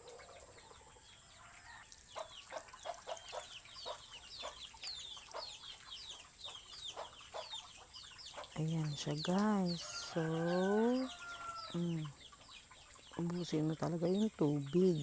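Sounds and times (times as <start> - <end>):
chickens clucking: 0.0 - 14.8.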